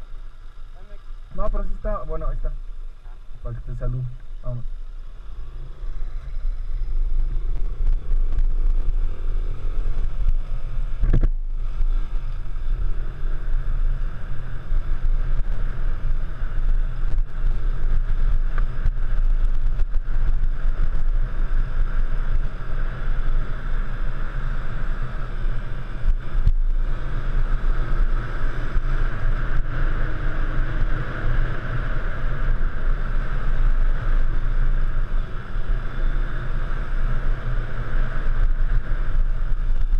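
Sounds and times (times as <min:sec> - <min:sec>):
heavy low rumble: 0:00.0 - 0:22.5.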